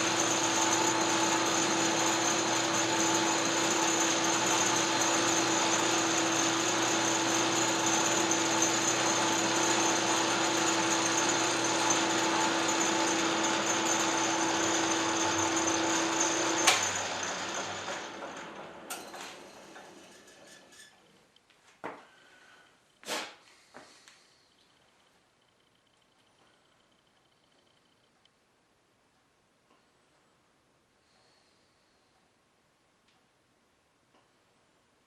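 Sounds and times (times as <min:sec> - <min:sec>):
motor whining: 0:00.0 - 0:20.1.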